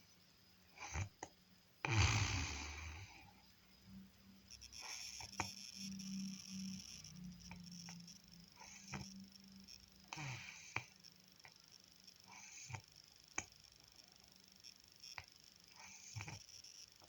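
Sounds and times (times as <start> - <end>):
person snoring faintly: 0.8 - 3.4, 4.7 - 11.6, 12.2 - 13.0, 15.2 - 16.5.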